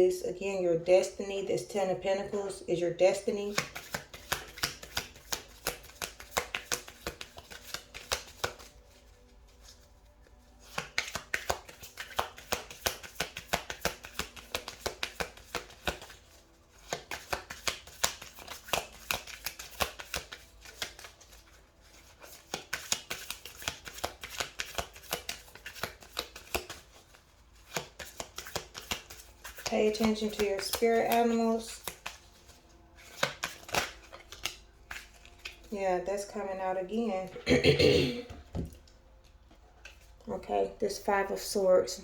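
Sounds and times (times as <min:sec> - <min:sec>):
cards shuffling: 0:03.4 - 0:35.7.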